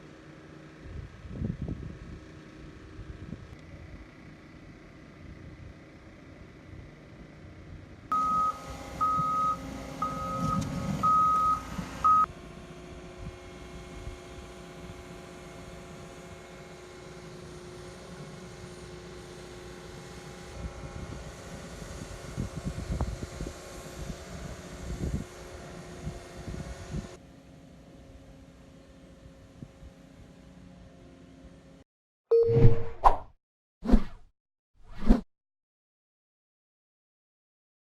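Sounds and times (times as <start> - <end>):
heavy machine engine running: 0.0 - 31.2
reversing alarm beeping: 8.1 - 12.3.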